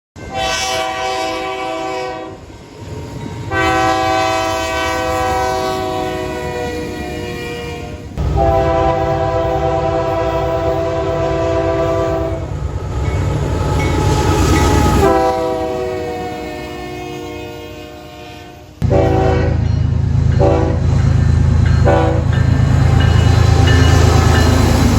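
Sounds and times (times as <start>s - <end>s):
train air horn blasts: 0.2s - 2.4s, 3.5s - 12.5s, 14.9s - 19.7s, 20.4s - 20.9s, 21.8s - 22.4s
low train rumble: 0.2s - 24.9s.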